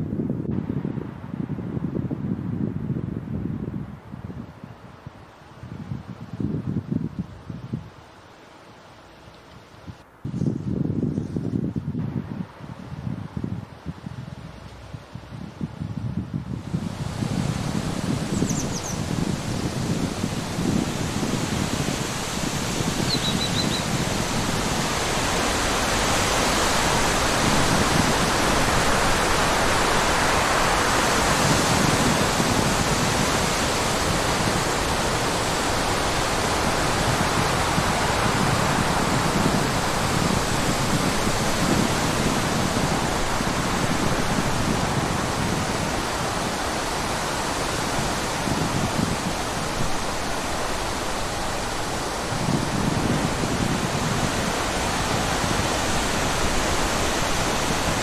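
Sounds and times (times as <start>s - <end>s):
rushing water: 16.5s - 58.0s.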